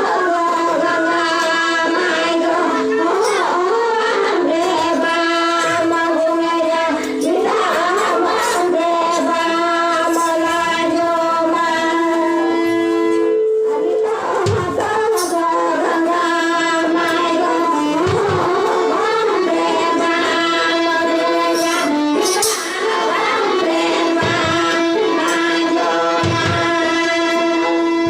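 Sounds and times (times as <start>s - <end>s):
person singing: 0.0s - 28.0s
held instrumental notes: 0.5s - 28.0s.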